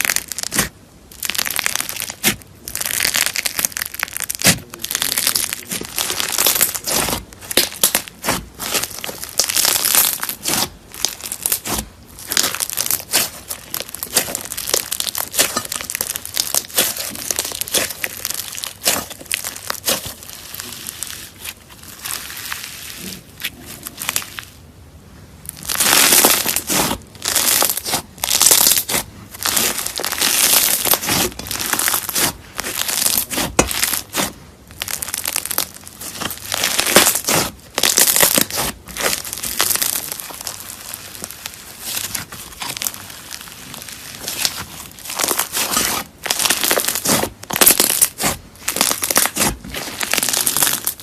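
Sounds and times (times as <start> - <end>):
slime squeezed and crackling: 0.0 - 24.7, 25.4 - 51.0.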